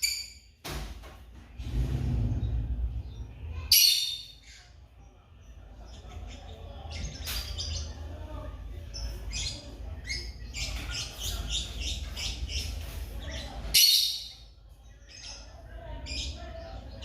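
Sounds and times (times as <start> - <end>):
low rumble: 1.5 - 3.6
lovebirds chirping: 2.2 - 17.0.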